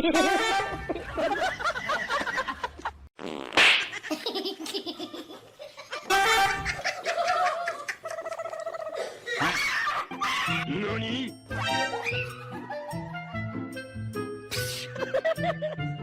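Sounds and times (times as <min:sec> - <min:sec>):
person giggling: 0:15.0 - 0:15.9.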